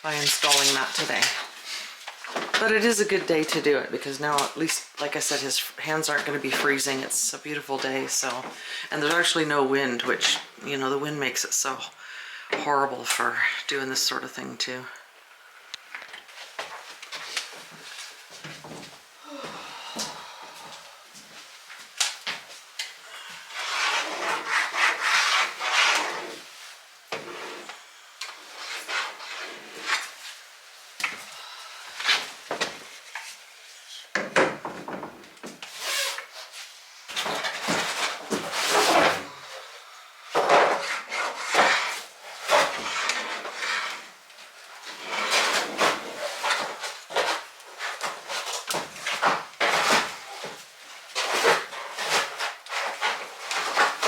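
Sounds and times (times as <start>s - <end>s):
scraping and rubbing: 0.1s - 2.0s, 23.2s - 30.6s, 35.7s - 54.0s.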